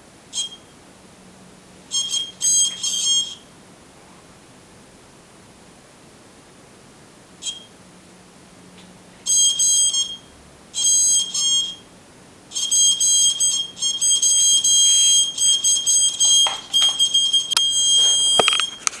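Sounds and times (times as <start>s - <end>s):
sharp clicks: 16.4s - 19.0s.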